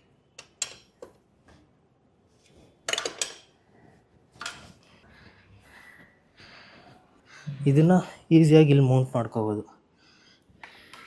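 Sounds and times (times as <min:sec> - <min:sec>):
metal parts and tools clinking: 0:02.9 - 0:03.5.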